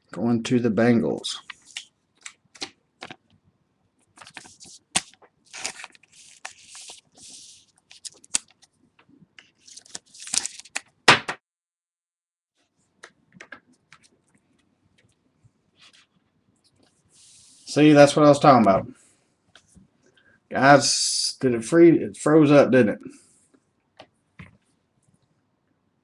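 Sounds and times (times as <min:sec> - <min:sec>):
trading cards and sleeves handled: 0:01.2 - 0:03.2, 0:04.0 - 0:11.0.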